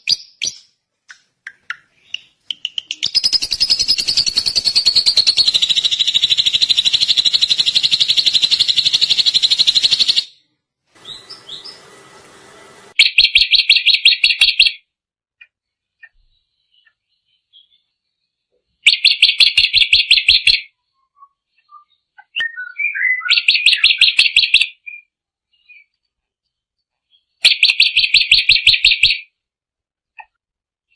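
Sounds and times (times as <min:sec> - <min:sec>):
bird rattling trills: 0:02.6 - 0:10.3, 0:11.0 - 0:14.2.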